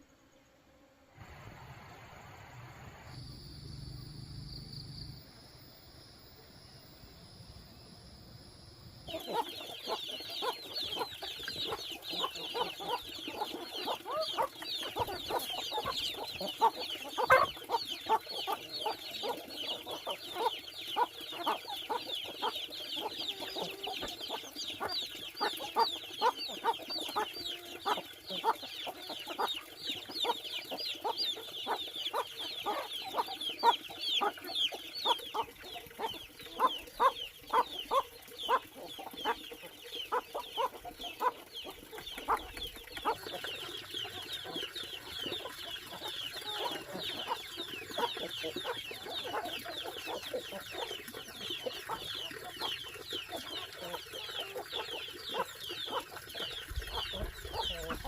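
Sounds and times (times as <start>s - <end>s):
chickens clucking and peeping: 9.1s - 58.0s.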